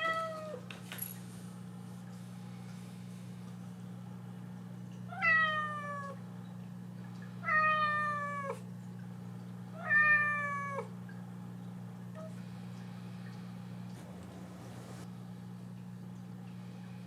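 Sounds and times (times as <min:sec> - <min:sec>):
steady low hum: 0:00.0 - 0:17.0
cat meowing: 0:05.1 - 0:06.2, 0:07.4 - 0:08.6, 0:09.8 - 0:10.9.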